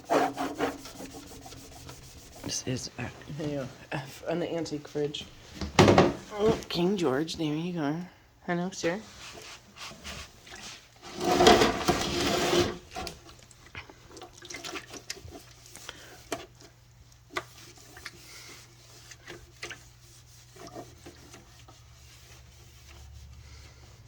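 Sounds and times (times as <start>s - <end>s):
cloth rubbing fridge surface: 0.0s - 7.3s, 8.9s - 13.0s, 17.5s - 24.0s.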